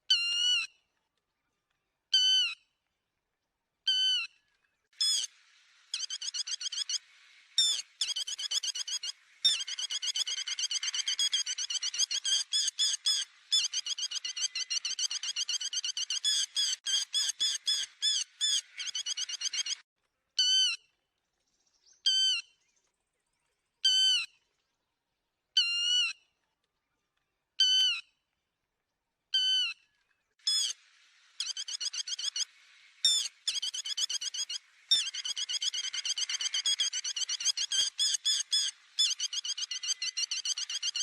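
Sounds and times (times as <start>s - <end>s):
lapwing calls: 7.6s - 19.8s, 30.4s - 30.8s, 31.4s - 41.0s.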